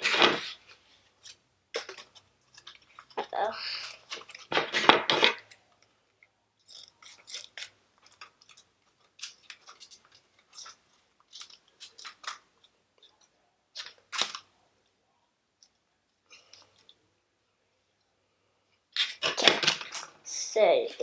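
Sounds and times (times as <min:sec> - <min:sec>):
loud plastic crackle: 0:19.0 - 0:20.2.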